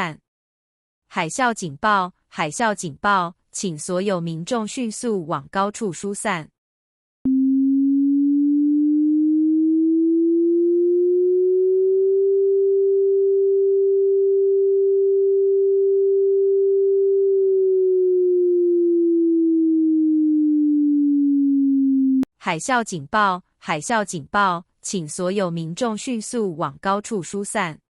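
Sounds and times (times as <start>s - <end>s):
siren tone rising and falling: 7.3s - 22.3s.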